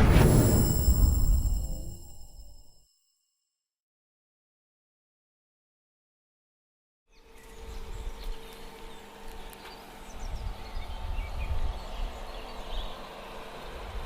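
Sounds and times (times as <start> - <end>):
uneven low rumble: 0.0 - 2.6.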